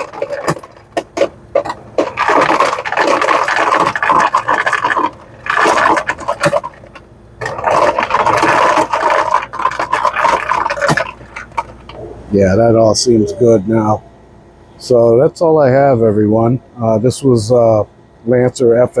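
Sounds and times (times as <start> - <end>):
ice cubes rattling from chute: 0.0 - 12.0.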